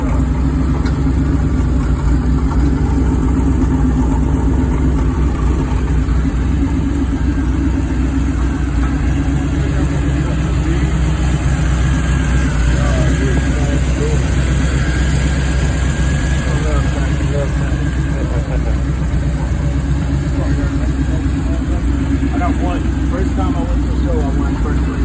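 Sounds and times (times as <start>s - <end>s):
car engine idling with exhaust leak: 0.0s - 25.0s.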